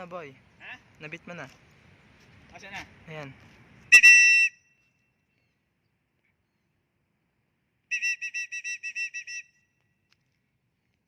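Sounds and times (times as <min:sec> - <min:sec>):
handheld whistle short toots: 0:03.9 - 0:04.8, 0:07.9 - 0:09.8.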